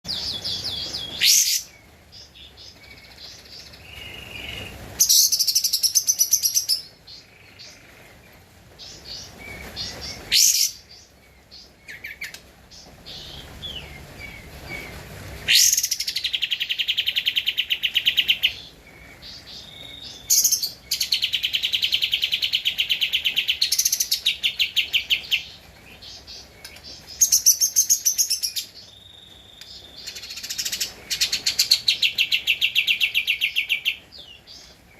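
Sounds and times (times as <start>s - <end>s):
songbird chattering song: 0.1s - 34.9s.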